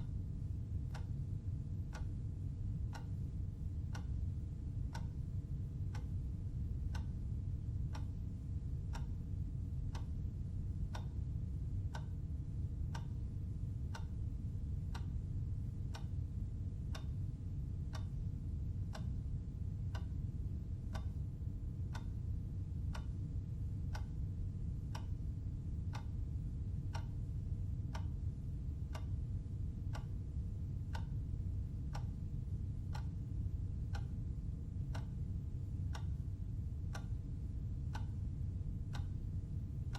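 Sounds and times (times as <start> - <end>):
clock ticking: 0.7 - 1.2, 2.8 - 7.2, 7.8 - 8.3, 8.9 - 9.2, 9.9 - 10.2, 10.9 - 11.2, 11.9 - 12.2, 14.8 - 15.2, 17.9 - 18.2, 20.9 - 21.2, 21.9 - 22.2, 22.8 - 24.2, 24.8 - 25.2, 25.8 - 26.2, 26.9 - 27.2, 27.9 - 28.2, 28.8 - 29.2, 29.9 - 30.2, 30.9 - 32.2, 32.9 - 33.2, 33.9 - 34.2, 34.9 - 35.2, 35.9 - 36.2, 36.9 - 37.2, 37.9 - 38.2, 38.9 - 39.3.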